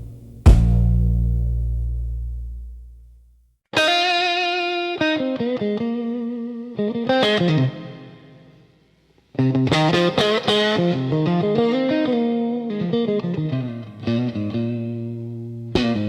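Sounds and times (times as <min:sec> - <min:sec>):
deep low hit ringing: 0:00.0 - 0:03.2
distorted electric guitar solo: 0:03.8 - 0:08.4, 0:09.4 - 0:16.0.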